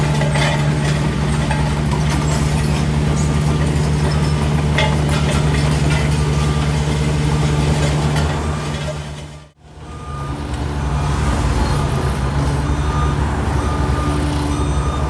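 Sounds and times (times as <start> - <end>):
road roller diesel engine running: 0.0 - 15.0.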